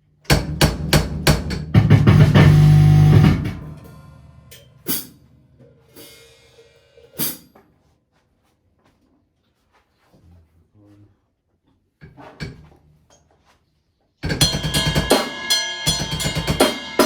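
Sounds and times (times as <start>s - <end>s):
drum and cymbal hits: 0.3s - 5.3s, 5.9s - 7.5s, 14.2s - 17.0s.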